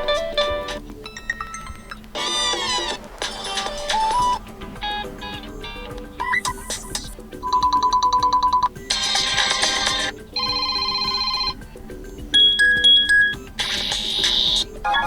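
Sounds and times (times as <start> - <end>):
bright chime: 0.0 - 11.6
ringtone previews: 0.0 - 15.0
soft background music: 0.0 - 15.0
fast-pulsing electronic beep: 3.8 - 11.6, 12.4 - 15.0.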